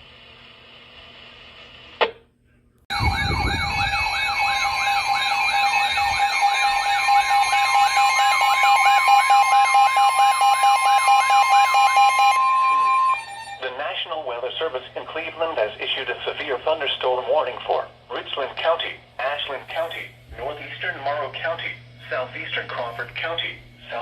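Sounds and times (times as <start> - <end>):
two-tone alert alarm: 2.9 - 13.6
sweeping siren tone: 2.9 - 13.7.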